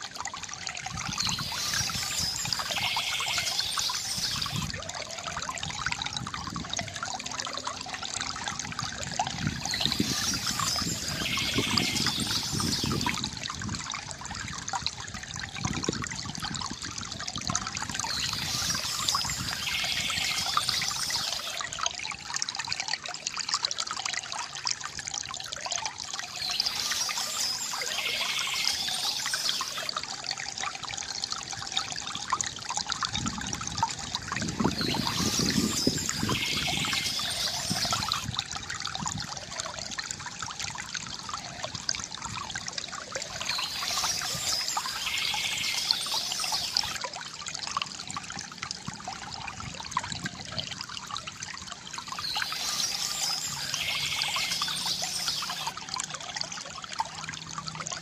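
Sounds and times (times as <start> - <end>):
river water trickling and gurgling: 0.0 - 58.0
soft bird chirping: 1.1 - 4.7, 9.6 - 13.2, 18.0 - 21.6, 26.2 - 29.9, 34.7 - 38.2, 43.3 - 47.0, 52.0 - 55.7.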